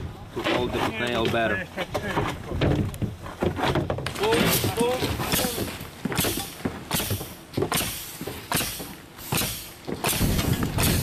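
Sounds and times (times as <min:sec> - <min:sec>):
nails driven into plywood: 0:03.5 - 0:11.0.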